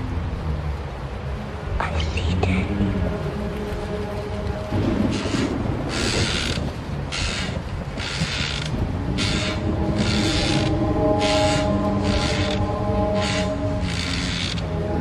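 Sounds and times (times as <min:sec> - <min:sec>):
low eerie drone: 0:00.0 - 0:15.0
rhythmic rasping strokes: 0:04.7 - 0:15.0.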